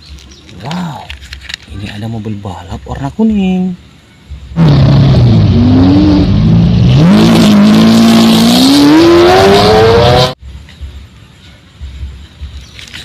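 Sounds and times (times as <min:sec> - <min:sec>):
race car engine revving: 0:04.6 - 0:10.4.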